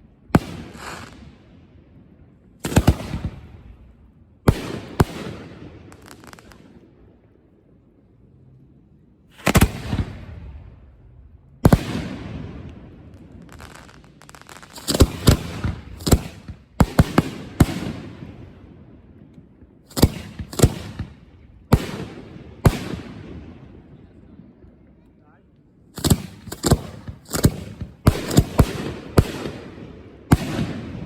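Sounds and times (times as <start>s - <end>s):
fireworks banging: 0.4s - 1.4s, 2.6s - 3.6s, 4.5s - 6.7s, 11.6s - 18.6s, 19.4s - 23.1s, 26.0s - 31.0s.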